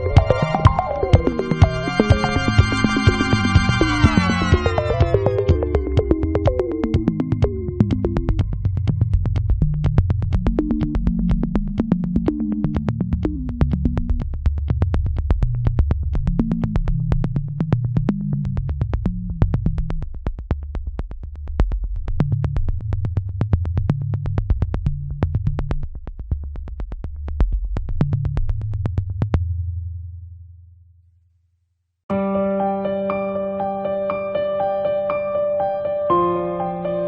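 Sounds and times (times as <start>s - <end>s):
electronic synthesizer music: 0.0s - 9.0s, 32.1s - 37.0s.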